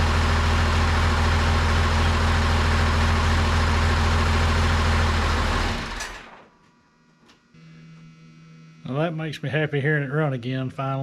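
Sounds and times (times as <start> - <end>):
tractor diesel engine running: 0.0 - 6.4.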